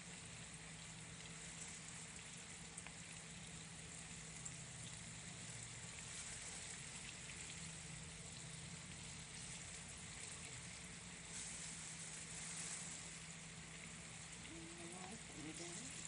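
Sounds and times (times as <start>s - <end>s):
chicken frying in hot oil: 0.0s - 16.0s.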